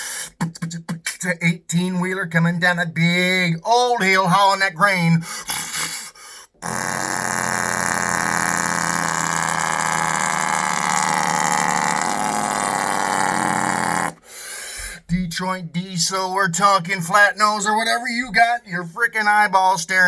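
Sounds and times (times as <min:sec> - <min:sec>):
man imitating truck engine: 0:00.0 - 0:01.2, 0:05.0 - 0:14.2.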